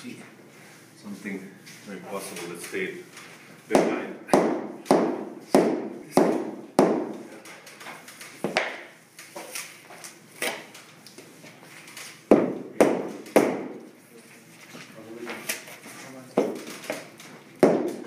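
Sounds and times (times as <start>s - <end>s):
hammer knocking on wooden floor: 3.7s - 7.2s, 12.3s - 13.8s.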